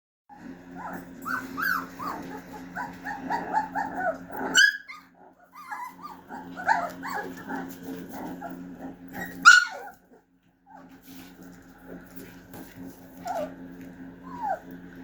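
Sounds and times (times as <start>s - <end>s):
puppy growling: 0.3s - 15.0s
puppy barking: 0.8s - 10.9s.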